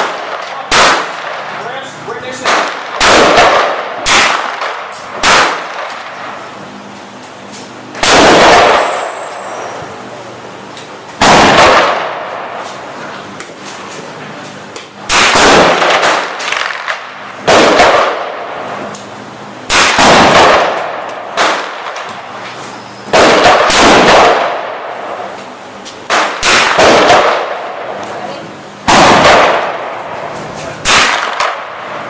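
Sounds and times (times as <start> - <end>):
gunshots with echo: 0.0 - 1.5, 2.3 - 6.1, 8.0 - 9.2, 11.2 - 12.5, 15.1 - 18.5, 19.7 - 22.1, 23.1 - 25.0, 26.1 - 27.9, 28.8 - 30.1, 30.8 - 31.9.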